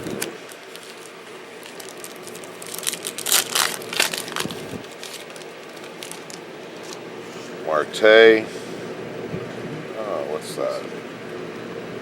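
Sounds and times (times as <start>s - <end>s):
trading cards crinkling: 0.1s - 7.0s.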